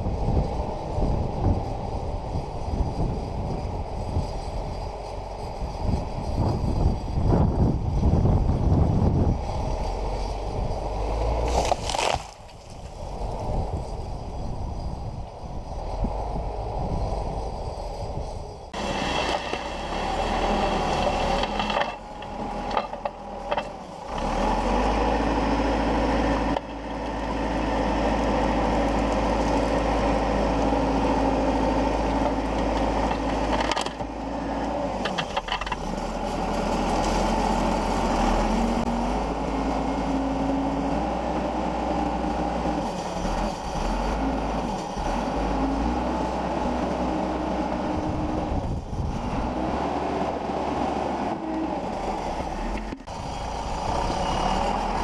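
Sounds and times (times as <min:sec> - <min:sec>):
diesel engine running under load: 0:00.0 - 0:55.0.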